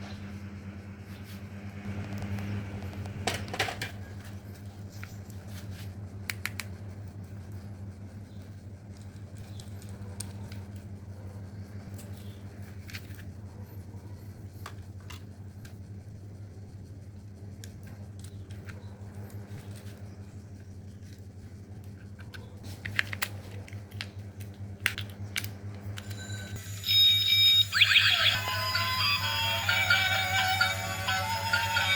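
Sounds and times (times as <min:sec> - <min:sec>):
steady low hum: 0:00.0 - 0:31.9
plastic toys clicking and scraping: 0:21.0 - 0:26.2.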